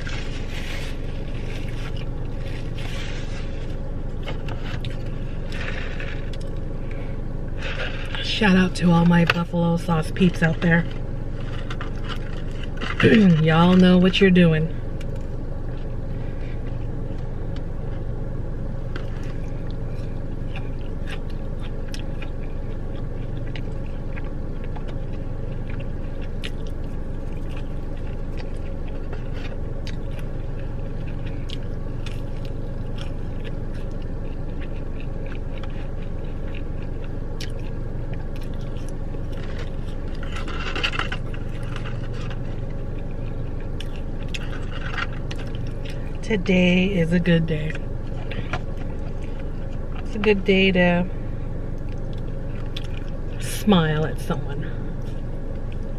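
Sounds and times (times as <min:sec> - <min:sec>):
person chewing food: 0:00.0 - 0:08.2, 0:10.5 - 0:13.4, 0:14.8 - 0:46.2, 0:47.7 - 0:50.1, 0:51.4 - 0:53.4, 0:54.9 - 0:55.9
steady low hum: 0:00.0 - 0:55.9.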